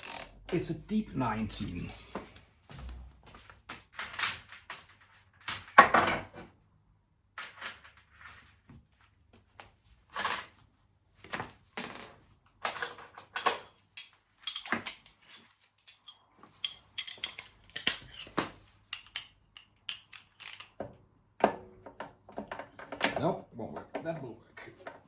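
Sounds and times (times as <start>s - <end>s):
metal tools clinking: 11.7s - 20.8s, 22.0s - 25.0s.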